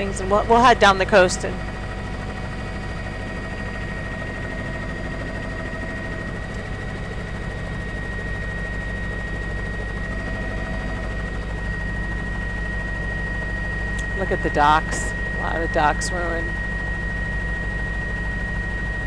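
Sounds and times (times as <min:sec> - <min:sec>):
aircraft engine drone: 0:00.0 - 0:19.0
high steady whine: 0:00.0 - 0:19.0.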